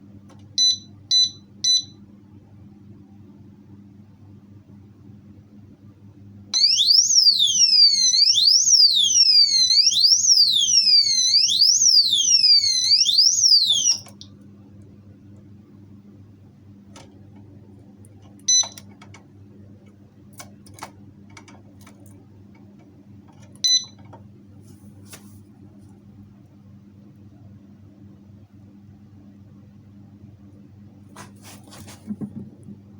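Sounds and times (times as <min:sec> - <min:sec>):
alarm wailing siren: 0:06.6 - 0:14.2.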